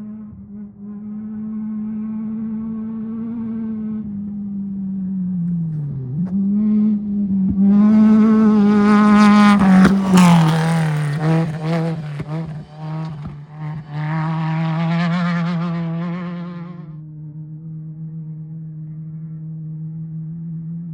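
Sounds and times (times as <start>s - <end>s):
engine running at high revs: 0.0s - 20.9s.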